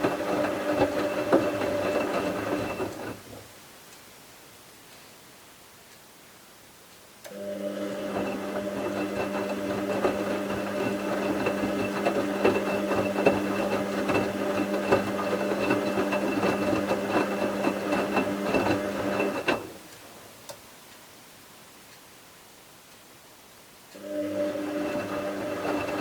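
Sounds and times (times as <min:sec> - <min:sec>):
washing machine motor hum: 0:00.0 - 0:03.4, 0:07.3 - 0:19.9, 0:24.0 - 0:26.0.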